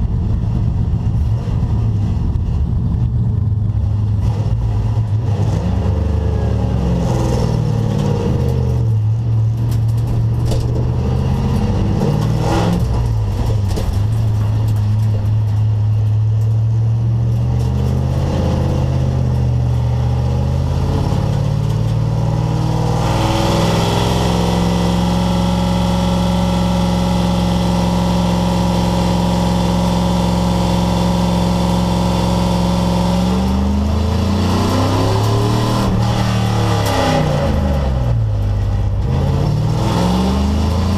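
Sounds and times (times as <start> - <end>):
race car engine revving: 0.0 - 40.9.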